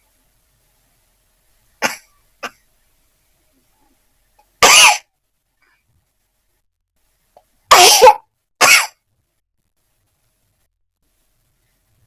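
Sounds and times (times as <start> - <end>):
woman sneezing: 7.7 - 9.0.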